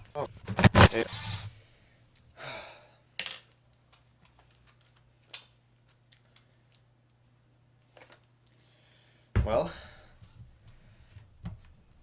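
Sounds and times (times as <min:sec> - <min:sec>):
sharp clicks: 0:00.4 - 0:01.5.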